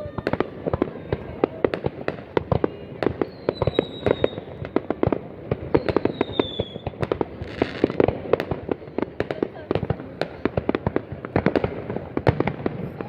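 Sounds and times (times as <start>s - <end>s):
fireworks bangs and pops: 0.0s - 13.0s
firework whistle: 3.0s - 4.8s, 5.6s - 7.8s.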